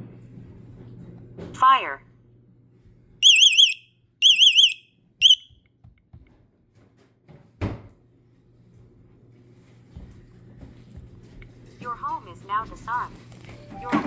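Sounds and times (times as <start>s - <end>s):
fire alarm warbling tone: 3.2s - 5.4s.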